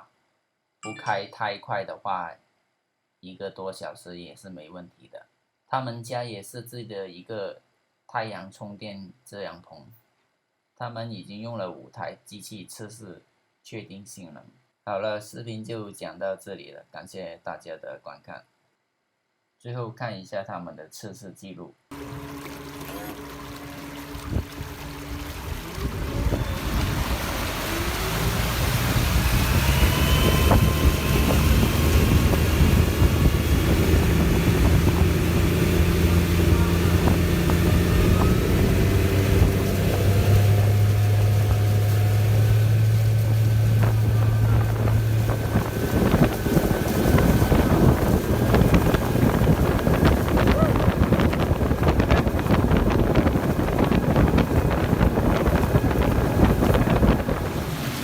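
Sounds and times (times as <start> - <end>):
electric motor whine: 21.9 - 49.4
low hum: 21.9 - 58.0
water noise: 21.9 - 58.0
wind on microphone: 23.0 - 58.0.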